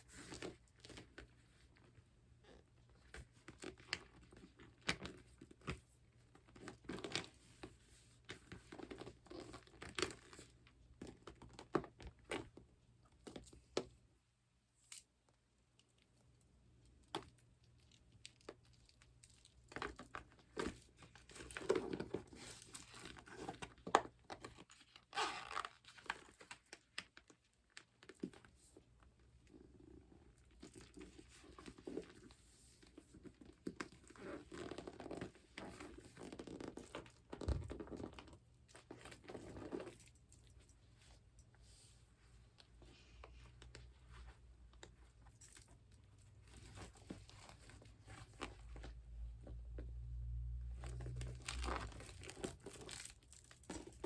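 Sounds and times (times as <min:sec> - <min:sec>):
leather handbags crinkling: 0:17.9 - 0:26.9, 0:30.4 - 0:41.5, 0:42.8 - 0:48.9, 0:50.8 - 0:54.0.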